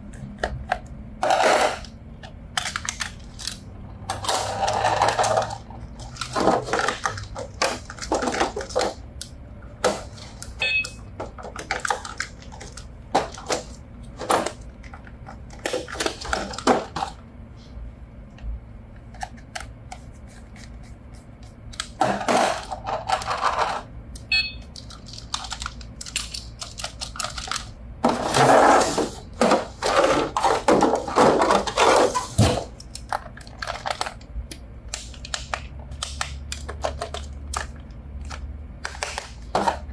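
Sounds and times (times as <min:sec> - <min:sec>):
toys and packaging rustling: 0:02.6 - 0:09.2, 0:11.2 - 0:17.2, 0:21.9 - 0:23.9, 0:24.7 - 0:34.4, 0:35.0 - 0:39.9.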